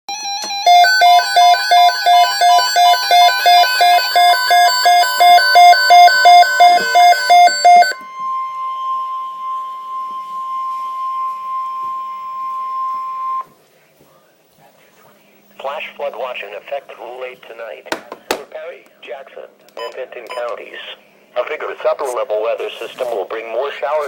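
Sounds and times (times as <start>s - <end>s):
steady high alert tone: 0.1s - 13.4s
electronic beeping alternating pitches: 0.5s - 13.4s.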